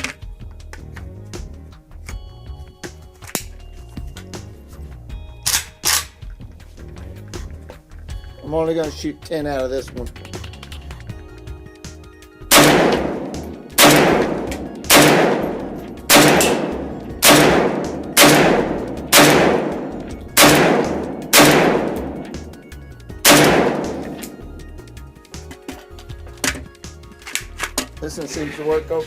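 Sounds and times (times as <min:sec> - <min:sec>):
rifle shots: 0:12.5 - 0:22.6, 0:23.2 - 0:24.6.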